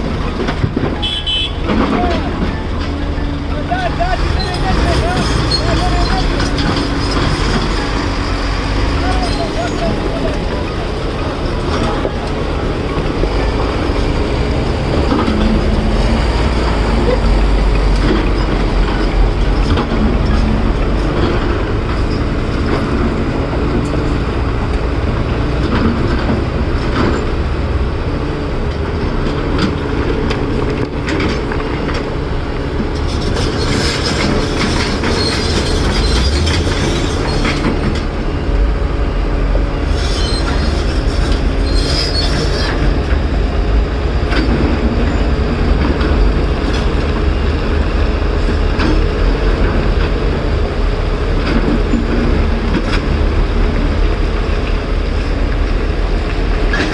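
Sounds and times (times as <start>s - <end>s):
metallic squealing and scraping: 0.0s - 21.2s, 33.0s - 38.5s, 39.7s - 43.2s
excavator diesel engine running: 0.0s - 56.9s.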